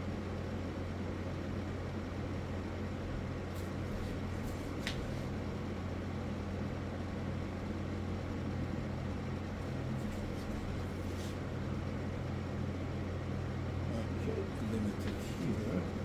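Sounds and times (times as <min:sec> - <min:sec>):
low hum: 0:09.0 - 0:16.0.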